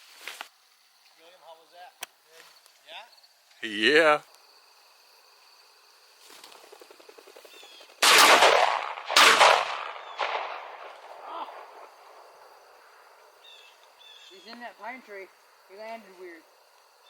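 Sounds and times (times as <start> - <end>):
shotgun shots with echo: 8.0 - 11.9.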